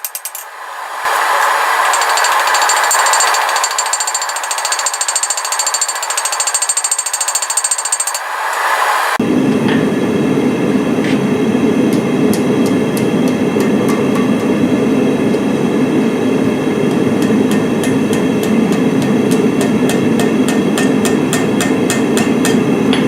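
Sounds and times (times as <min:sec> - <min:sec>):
hammer strikes on steel: 0:00.0 - 0:00.6, 0:16.9 - 0:23.0.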